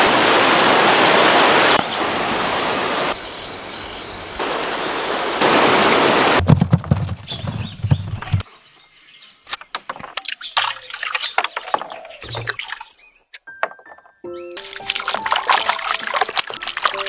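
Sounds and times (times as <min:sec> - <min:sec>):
running water rushing: 0:00.0 - 0:08.4, 0:14.6 - 0:17.0
irregular knocks and low thumps: 0:06.4 - 0:08.4.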